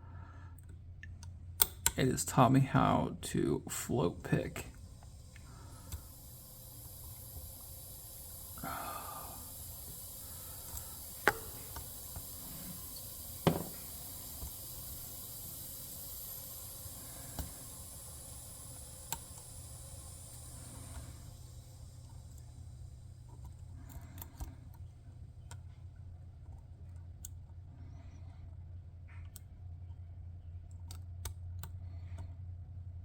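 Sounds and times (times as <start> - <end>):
faint hiss: 2.0 - 25.3.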